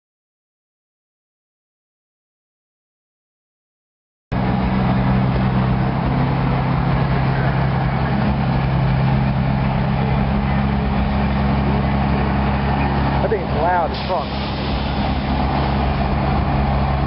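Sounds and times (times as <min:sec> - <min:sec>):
diesel truck engine idling: 0:04.4 - 0:17.0.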